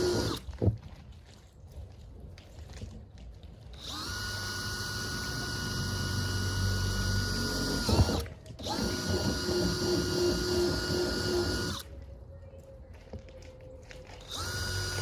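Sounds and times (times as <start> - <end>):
power drill boring holes: 0.0 - 0.4, 3.8 - 11.8, 14.3 - 15.0.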